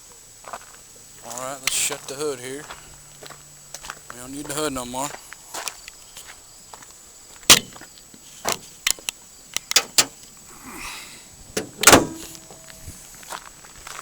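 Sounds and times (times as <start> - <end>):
car hood slamming shut: 7.5 - 7.8, 9.7 - 10.2, 11.5 - 12.7
thud: 11.6 - 12.7.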